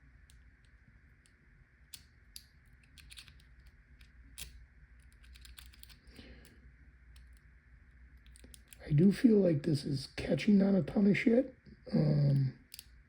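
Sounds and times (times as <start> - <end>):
lock pick clicking and scratching: 1.9 - 6.0, 7.1 - 7.4, 8.2 - 8.8.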